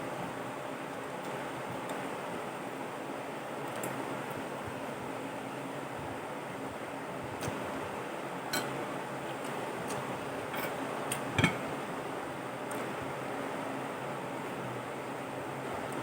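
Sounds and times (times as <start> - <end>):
utensils clicking on plate: 8.5 - 8.8, 9.9 - 11.6.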